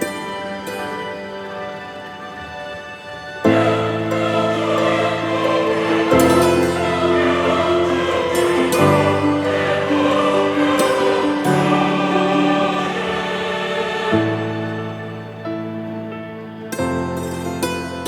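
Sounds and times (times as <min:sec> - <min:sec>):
slow held music chords: 0:03.5 - 0:17.8.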